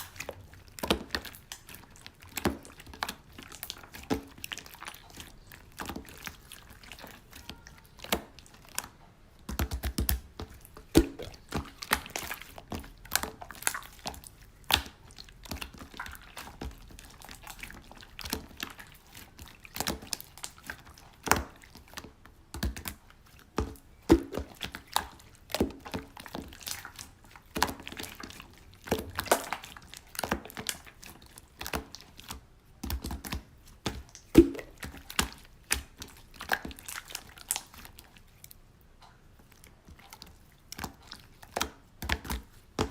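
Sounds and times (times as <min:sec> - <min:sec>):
slime squished by hand: 0:00.0 - 0:42.9.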